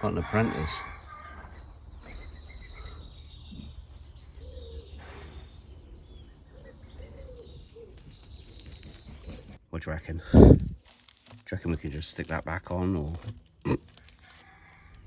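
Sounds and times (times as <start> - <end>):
small songbird singing: 0.8 - 9.6.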